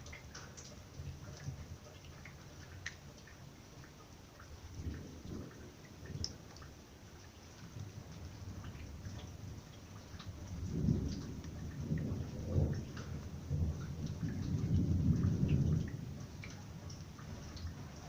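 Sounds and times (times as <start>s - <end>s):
raindrops dripping and pattering: 0.0s - 18.0s
thunder rumbling: 4.7s - 6.8s, 10.3s - 18.0s.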